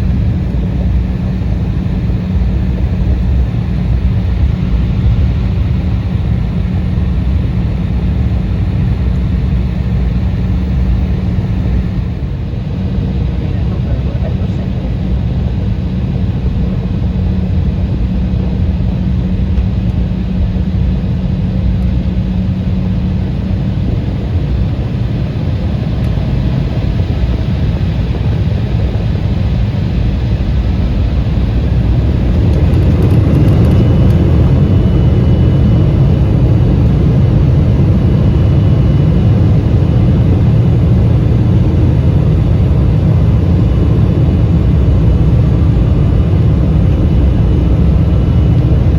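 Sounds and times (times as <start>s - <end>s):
aircraft cabin engine rumble: 0.0s - 48.9s
high fan whine: 0.0s - 48.9s.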